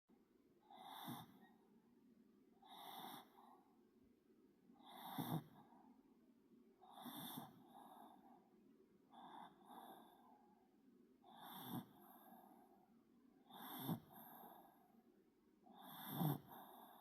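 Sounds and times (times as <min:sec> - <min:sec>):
dog snoring with high whistle: 0:00.7 - 0:01.6, 0:02.6 - 0:03.5, 0:04.8 - 0:05.6, 0:06.8 - 0:08.1, 0:11.3 - 0:12.3, 0:13.5 - 0:14.6, 0:15.8 - 0:17.0.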